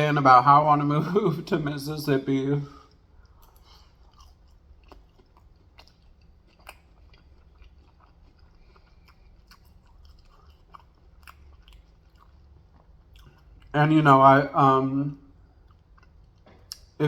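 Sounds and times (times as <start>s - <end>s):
chewing fried chicken: 2.7s - 14.2s, 15.1s - 17.0s.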